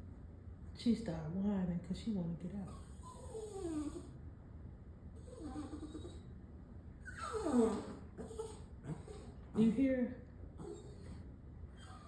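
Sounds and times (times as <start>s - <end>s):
dog whining: 2.7s - 4.2s, 5.2s - 6.4s, 7.0s - 9.4s, 10.6s - 12.0s.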